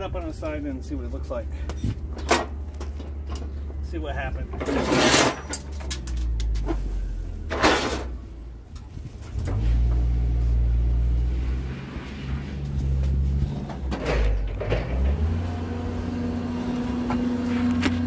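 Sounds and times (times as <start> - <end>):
engine humming: 0.0 - 18.0
knocks and clatters: 1.8 - 6.9, 12.7 - 15.4.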